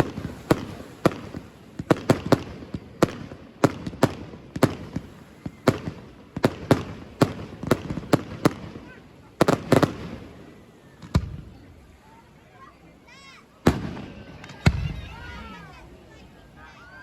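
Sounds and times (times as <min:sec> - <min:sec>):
fireworks bursting with sharp bangs: 0:00.0 - 0:12.0, 0:13.4 - 0:16.4.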